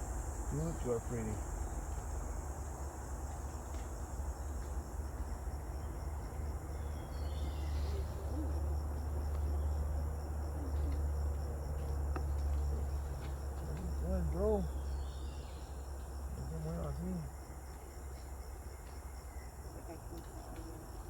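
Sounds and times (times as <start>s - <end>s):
high-pitched insect chorus: 0.0s - 21.0s
bird chirping: 5.8s - 8.6s, 13.8s - 19.5s.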